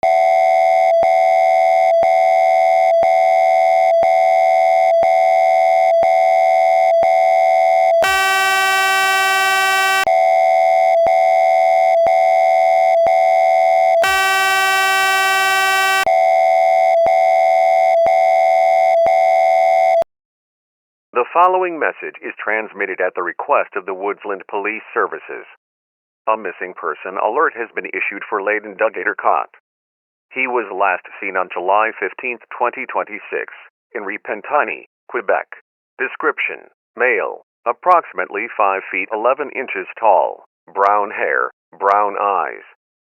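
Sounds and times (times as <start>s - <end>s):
harsh buzzy tone: 8.0s - 10.1s, 14.0s - 16.1s.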